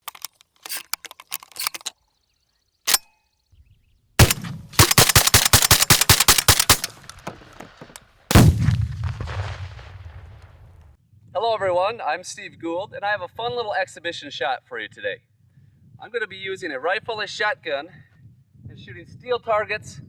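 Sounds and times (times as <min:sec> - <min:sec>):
gunshots: 0:04.2 - 0:10.4.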